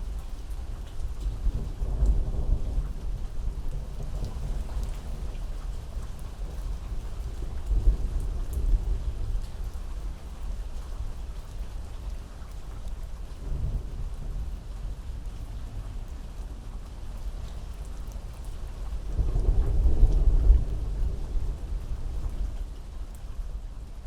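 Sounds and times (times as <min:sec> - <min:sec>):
heavy rain: 0:00.0 - 0:24.0
low rolling thunder: 0:01.0 - 0:10.1, 0:18.7 - 0:24.0.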